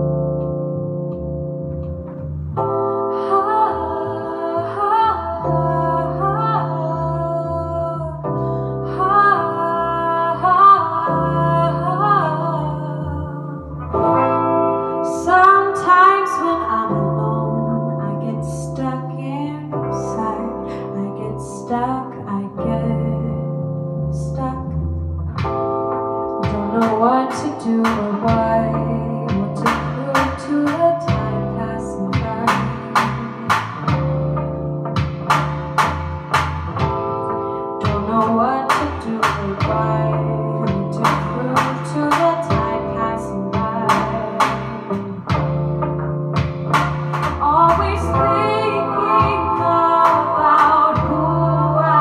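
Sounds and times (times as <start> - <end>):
bass line: 0.0 - 52.0
sustained keyboard chords: 0.0 - 52.0
woman singing: 3.1 - 14.2, 15.0 - 24.9, 26.4 - 33.9, 37.8 - 45.3, 47.4 - 52.0
guitar: 8.3 - 22.8, 25.3 - 52.0
drum beat: 46.4 - 47.8
person singing: 47.4 - 52.0.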